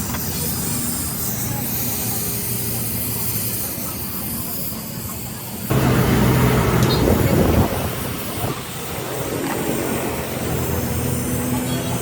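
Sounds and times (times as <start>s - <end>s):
machine running with low hum: 5.7s - 8.2s.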